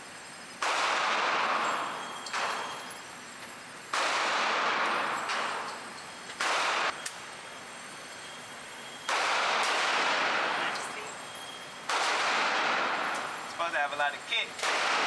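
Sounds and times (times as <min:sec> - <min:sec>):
revolver gunshots: 0:00.6 - 0:02.8, 0:03.9 - 0:05.8, 0:06.4 - 0:07.0, 0:09.1 - 0:10.8, 0:11.8 - 0:13.4, 0:14.6 - 0:15.0.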